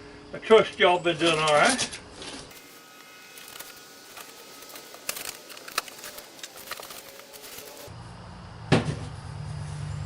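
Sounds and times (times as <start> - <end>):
cardboard box handling: 2.5 - 7.9.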